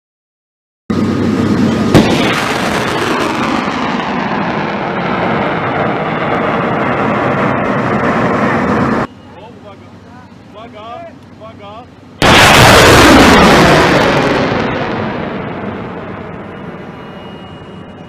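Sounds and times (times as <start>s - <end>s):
loud rushing roar: 0.9s - 9.1s, 12.2s - 17.0s
sharp bang: 1.8s - 6.7s.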